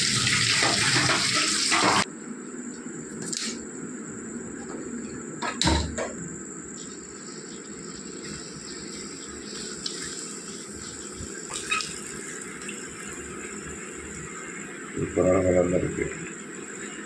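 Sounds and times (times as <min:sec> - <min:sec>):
fries sizzling in hot oil: 0:00.0 - 0:02.1, 0:06.8 - 0:15.0, 0:15.6 - 0:17.0.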